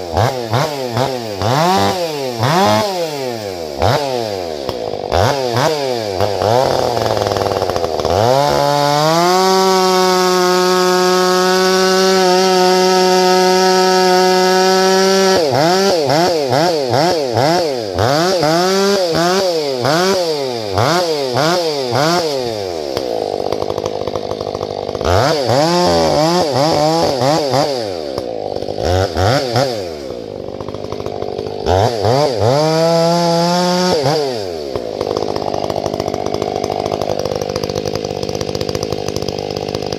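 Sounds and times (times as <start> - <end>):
chainsaw revving: 0.0 - 39.9.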